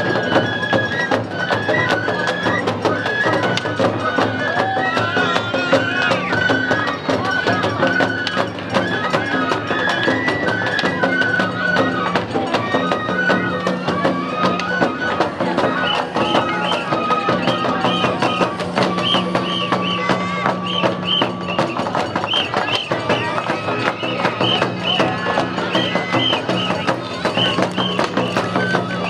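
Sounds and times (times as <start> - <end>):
bamboo flute melody: 0.0 - 29.0
rapid drum and percussion beats: 0.0 - 29.0.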